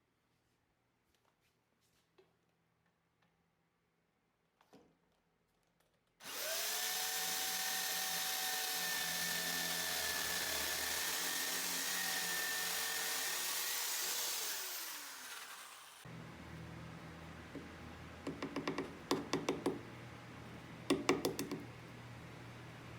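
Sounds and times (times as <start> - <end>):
electric drill running: 6.2 - 16.1.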